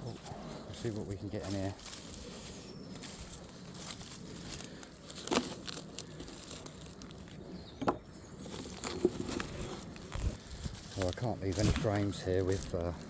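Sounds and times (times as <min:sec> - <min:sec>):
wooden frames knocking: 0:07.8 - 0:08.1.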